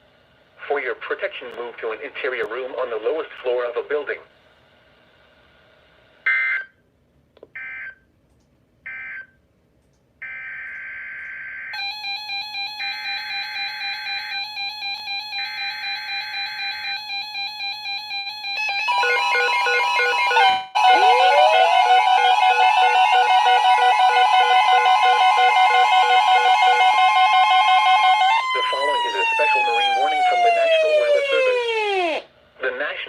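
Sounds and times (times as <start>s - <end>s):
tone sweeping upward: 18.6s - 32.2s.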